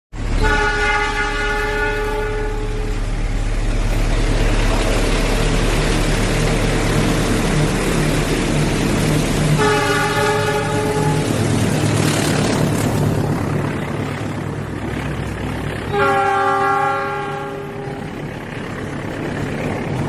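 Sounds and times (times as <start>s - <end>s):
train rumble and rail noise: 0.1s - 20.0s
locomotive horn: 0.2s - 3.1s, 9.5s - 11.5s, 15.8s - 18.2s.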